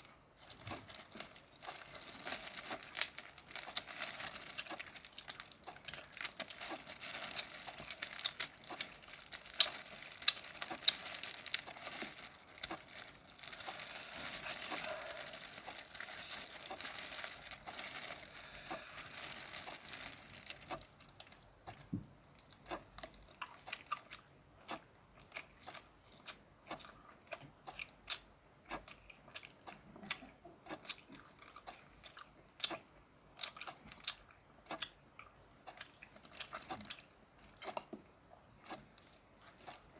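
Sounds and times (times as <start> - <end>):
shrimp shells crackling: 0.4 - 24.0
chewing: 0.4 - 39.9.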